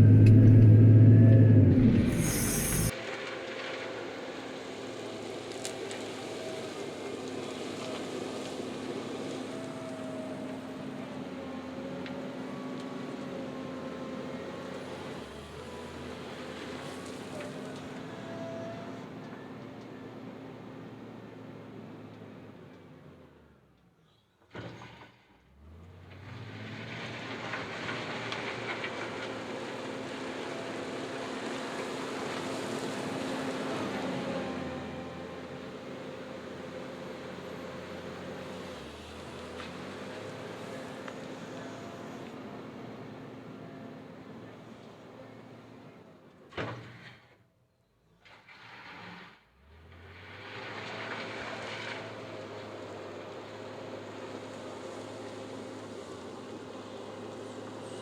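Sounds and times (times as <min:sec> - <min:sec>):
rising rush: 0:00.0 - 0:02.9
diesel engine humming: 0:00.0 - 0:03.8, 0:25.4 - 0:46.2
wheel loader working: 0:00.0 - 0:23.8, 0:24.5 - 0:47.2, 0:48.2 - 0:58.0.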